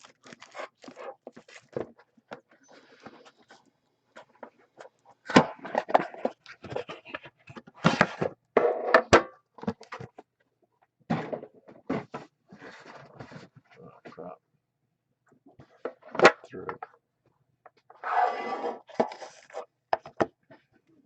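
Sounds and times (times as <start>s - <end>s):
packaging crinkling: 0.0s - 1.8s.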